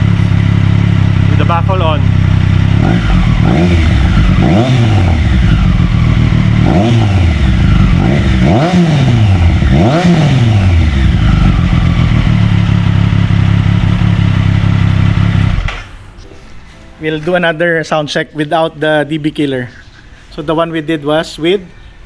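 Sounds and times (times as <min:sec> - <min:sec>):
motorcycle engine idling and revving: 0:00.0 - 0:16.1.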